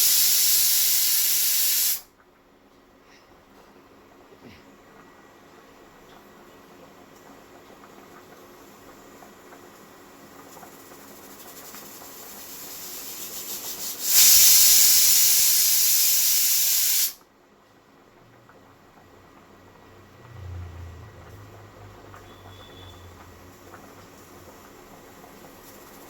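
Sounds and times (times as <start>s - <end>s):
pressure cooker whistle: 0.0s - 2.0s, 12.5s - 17.2s, 22.2s - 23.4s
steam blast: 0.0s - 2.0s, 11.8s - 17.2s.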